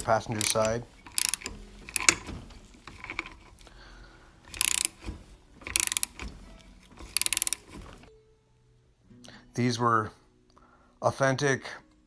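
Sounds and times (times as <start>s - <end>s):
ratchet wrench clicking: 0.0s - 3.7s, 4.4s - 8.0s.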